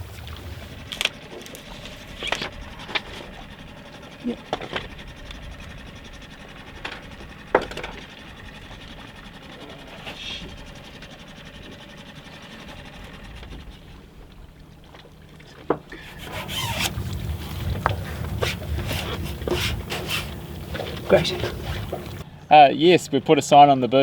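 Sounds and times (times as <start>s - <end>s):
rubbing handling noise: 16.0s - 22.2s.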